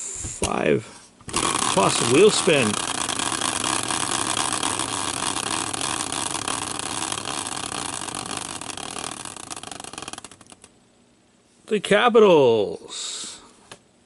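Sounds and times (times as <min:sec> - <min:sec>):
prize wheel pointer clicking: 0:01.3 - 0:10.7.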